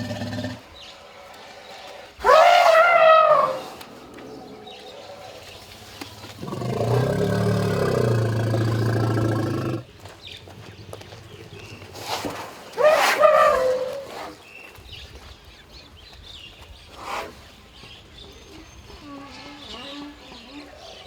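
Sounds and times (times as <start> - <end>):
elephant low rumbling call: 6.3 - 9.9.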